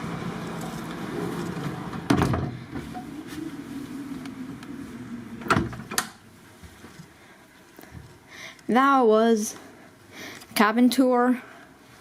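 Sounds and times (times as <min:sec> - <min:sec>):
outdoor ship and port hum: 0:00.0 - 0:08.7
sliding door thuds: 0:01.5 - 0:03.2, 0:05.4 - 0:06.2.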